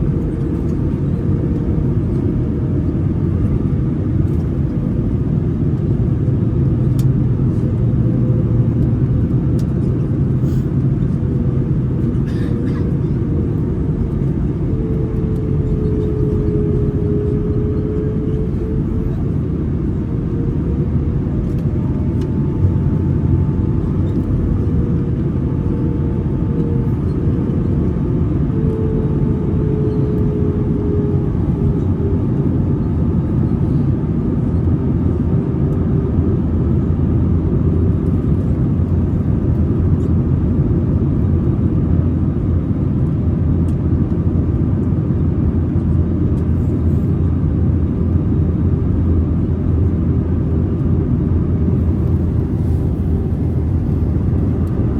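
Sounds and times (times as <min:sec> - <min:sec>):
faint whine: 0:00.0 - 0:41.9, 0:44.8 - 0:54.9
airplane cabin rumble: 0:00.0 - 0:54.9.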